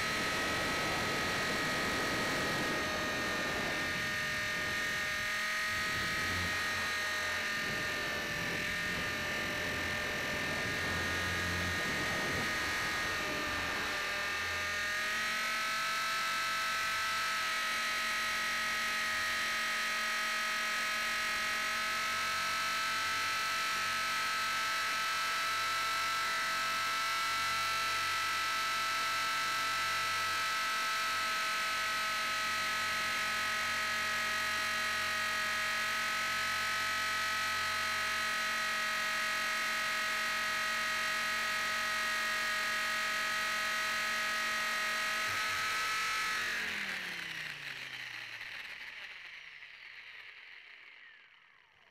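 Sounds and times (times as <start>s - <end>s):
rc helicopter motor whining: 0.0s - 51.9s.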